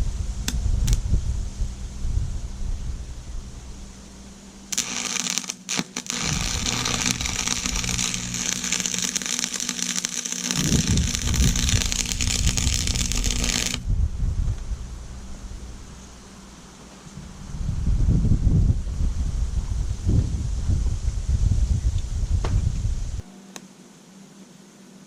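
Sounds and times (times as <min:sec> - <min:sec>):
low steady hum: 0:00.0 - 0:25.0
welding arc crackling: 0:02.9 - 0:16.8.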